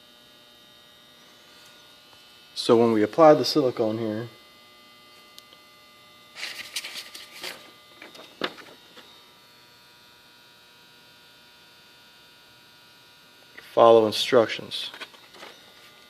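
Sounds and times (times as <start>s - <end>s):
steady electrical hum: 0.0s - 16.0s
rustling of handled objects: 6.4s - 9.0s, 14.8s - 16.0s.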